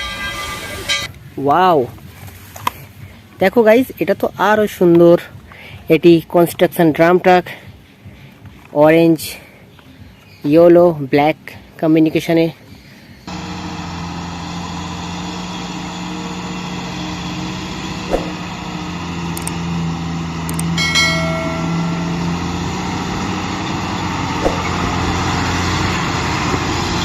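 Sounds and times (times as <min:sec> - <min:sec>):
truck engine idling: 0:13.3 - 0:27.0.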